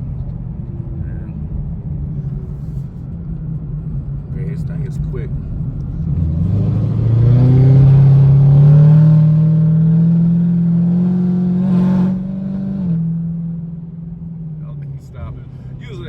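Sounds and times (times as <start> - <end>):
car engine accelerating hard: 3.9 - 16.0.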